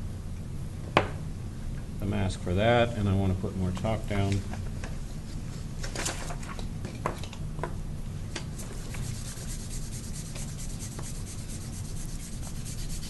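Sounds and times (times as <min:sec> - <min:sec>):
pad rubbing chalk pastel: 0:08.6 - 0:13.0.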